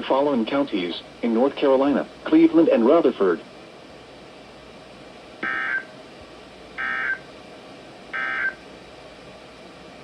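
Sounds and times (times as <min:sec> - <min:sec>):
digital data tone bursts: 0:05.4 - 0:05.9, 0:06.8 - 0:07.2, 0:08.2 - 0:08.6.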